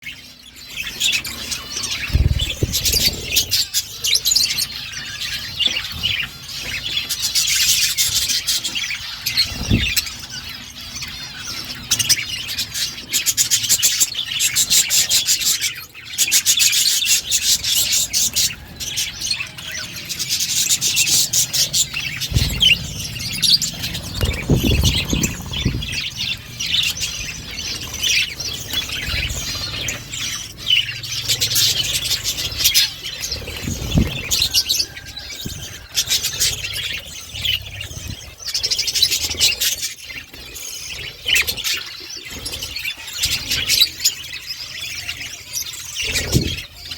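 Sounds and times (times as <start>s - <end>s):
budgerigars chattering and warbling: 0.0s - 46.9s
dull low thumps: 22.3s - 26.4s.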